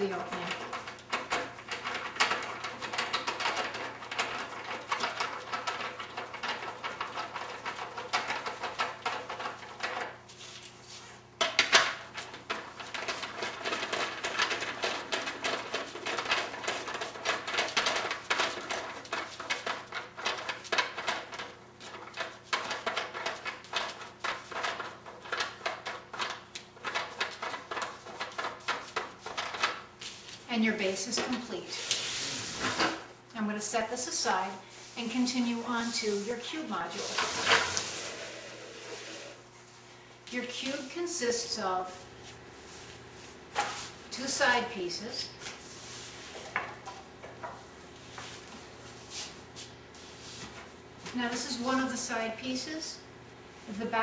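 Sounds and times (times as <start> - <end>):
rapid small clicks and rattles: 0.0 - 10.2, 11.5 - 30.0.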